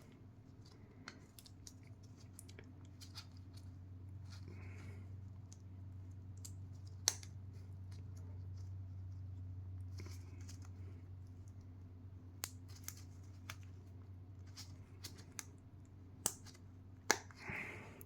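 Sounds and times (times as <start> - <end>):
faint low hum: 0.0 - 18.0.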